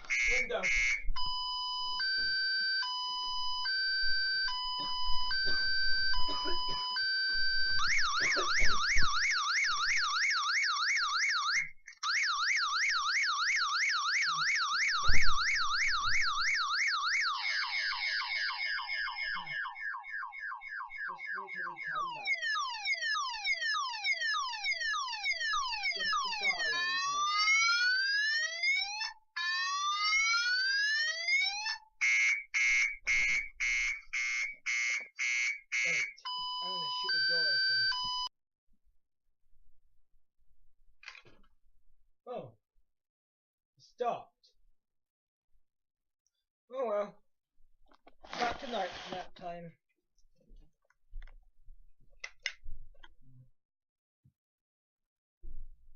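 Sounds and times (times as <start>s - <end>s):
electronic alarm siren: 0.0s - 38.3s.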